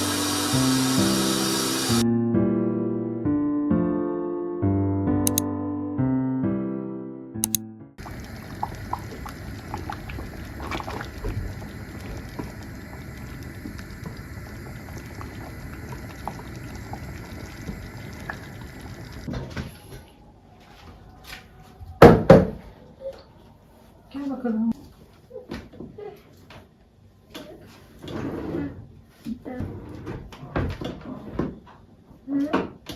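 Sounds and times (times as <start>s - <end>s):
water running: 0.0s - 2.0s, 8.0s - 19.3s.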